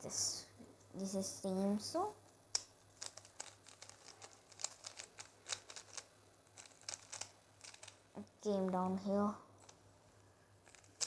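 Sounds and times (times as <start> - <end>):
puzzle cube clicking: 2.5 - 8.0, 10.6 - 11.0.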